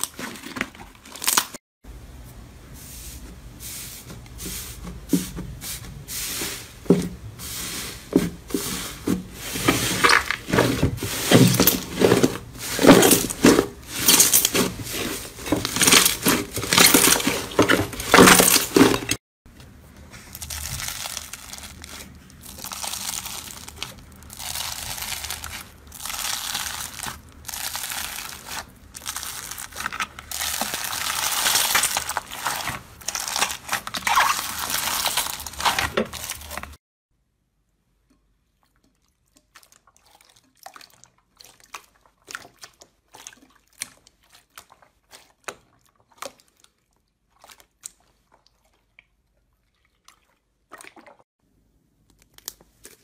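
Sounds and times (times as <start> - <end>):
slime crackling: 20.2 - 36.8.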